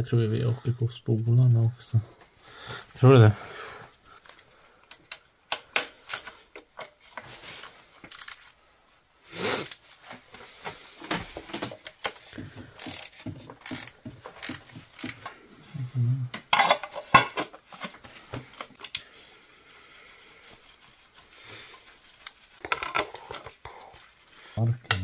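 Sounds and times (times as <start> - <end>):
hand ratchet clicking: 4.8 - 6.3, 8.0 - 8.5, 12.8 - 15.3.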